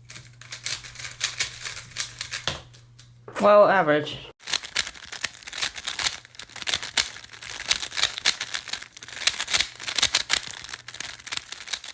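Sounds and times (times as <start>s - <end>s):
speed cube layers clicking: 4.4s - 11.9s.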